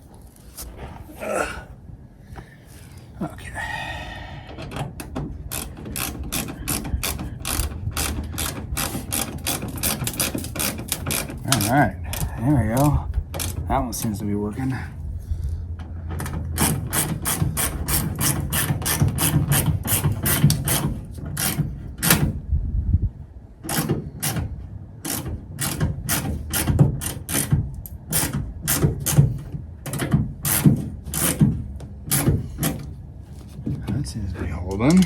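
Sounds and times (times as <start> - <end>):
ratchet wrench clicking: 5.5 - 12.3.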